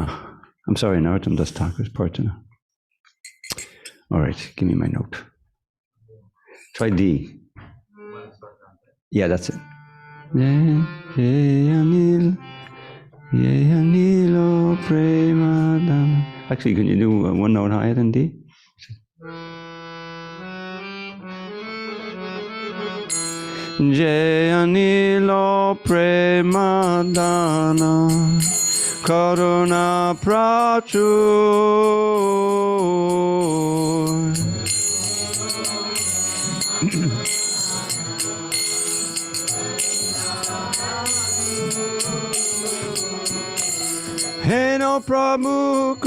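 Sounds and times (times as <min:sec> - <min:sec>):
hand cymbals ringing: 0:03.2 - 0:03.9, 0:26.5 - 0:46.0
harmonium melody over drone: 0:09.3 - 0:16.8, 0:19.2 - 0:46.0
hymn sung slowly: 0:23.8 - 0:46.0.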